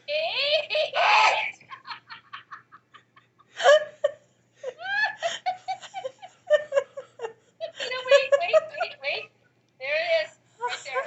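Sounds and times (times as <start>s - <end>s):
person laughing: 0.6s - 8.8s.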